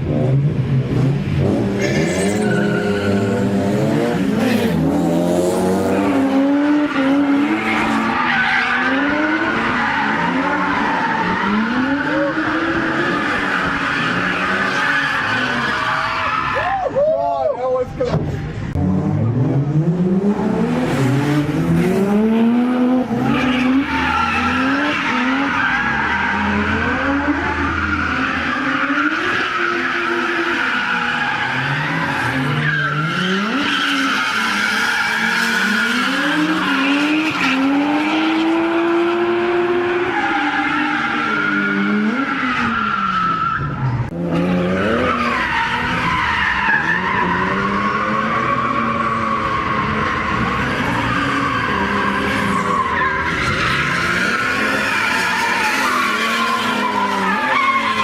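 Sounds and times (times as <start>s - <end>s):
car engines revving: 0.0s - 17.0s, 17.8s - 58.0s.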